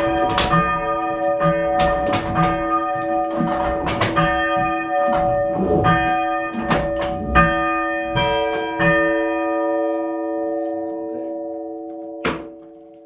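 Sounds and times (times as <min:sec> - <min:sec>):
low thuds: 0:00.0 - 0:09.5
church bells ringing: 0:00.0 - 0:13.0.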